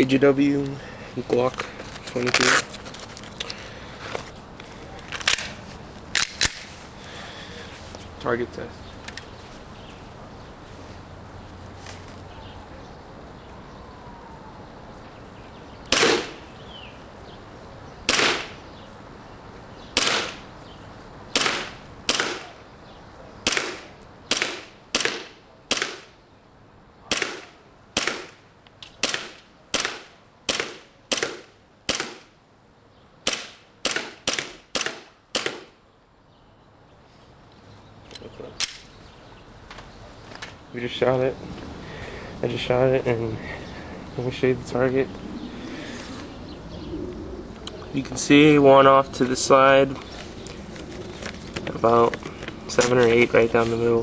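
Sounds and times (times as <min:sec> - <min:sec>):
airsoft pistol shots: 0:15.9 - 0:16.4, 0:18.1 - 0:18.6, 0:20.0 - 0:20.4, 0:21.4 - 0:22.6, 0:23.4 - 0:26.1, 0:27.1 - 0:28.4, 0:29.0 - 0:32.3, 0:33.2 - 0:35.8.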